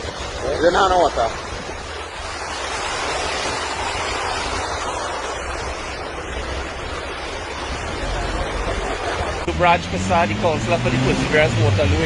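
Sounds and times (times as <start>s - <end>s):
rushing floodwater: 0.0s - 12.0s
wind rumbling on microphone: 0.0s - 12.0s.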